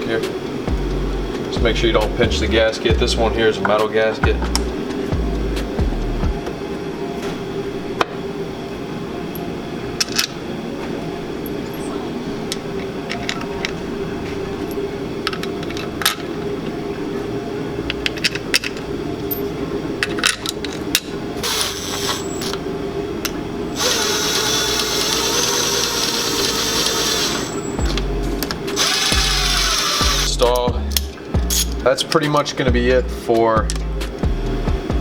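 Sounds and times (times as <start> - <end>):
steady hum: 0.0 - 35.0
power drill whirring: 21.4 - 22.6, 23.8 - 28.0, 28.8 - 30.4
bolts and tools clicking: 23.8 - 32.2.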